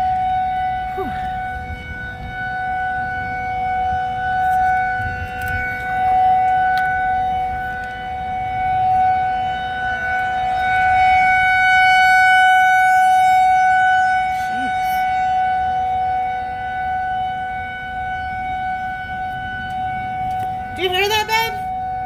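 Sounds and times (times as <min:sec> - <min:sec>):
tornado warning siren wailing: 0:00.0 - 0:22.0.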